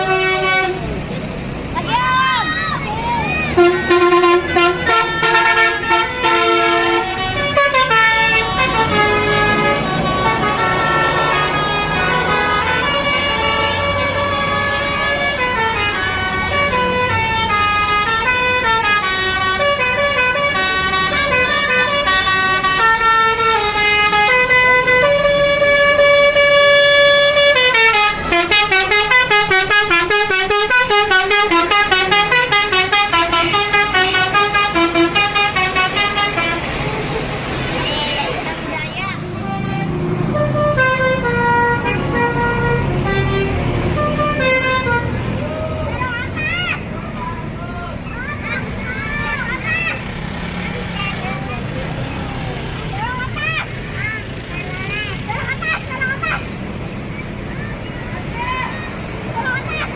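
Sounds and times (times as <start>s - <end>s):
bus musical horn playing a tune: 0.0s - 1.1s, 3.4s - 37.3s, 39.2s - 46.2s.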